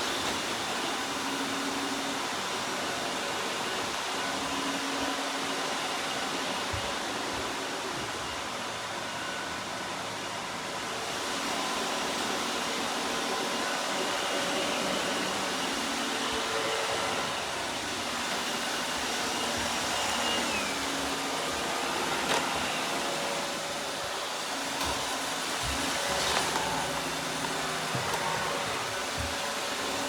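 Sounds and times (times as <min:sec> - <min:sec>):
robot vacuum whirring: 0:11.3 - 0:30.0.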